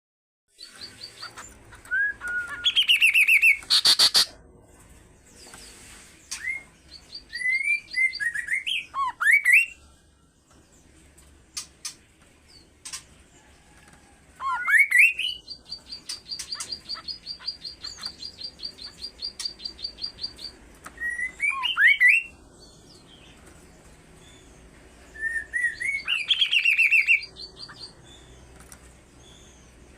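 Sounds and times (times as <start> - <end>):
bird whistling song: 0.6 - 4.3, 6.3 - 9.8, 14.4 - 22.4, 25.1 - 28.0.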